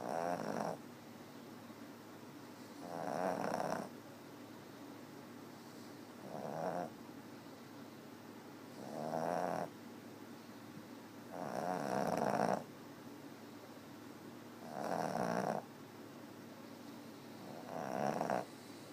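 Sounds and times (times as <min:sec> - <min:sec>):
pet snoring: 0:00.0 - 0:00.8, 0:02.6 - 0:03.9, 0:05.6 - 0:07.0, 0:08.7 - 0:09.7, 0:11.3 - 0:12.7, 0:14.6 - 0:15.7, 0:17.3 - 0:18.9.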